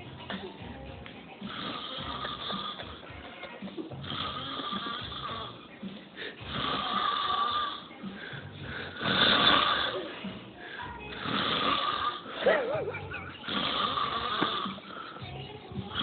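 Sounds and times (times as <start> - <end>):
man snoring heavily: 1.4 - 3.0, 4.0 - 5.6, 6.4 - 10.1, 11.1 - 12.5, 13.4 - 15.2.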